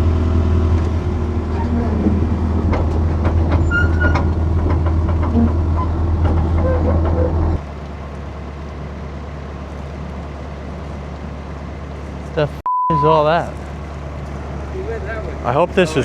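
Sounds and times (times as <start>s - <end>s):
engine humming: 0.0s - 16.0s
clicks and knocks: 1.9s - 7.6s.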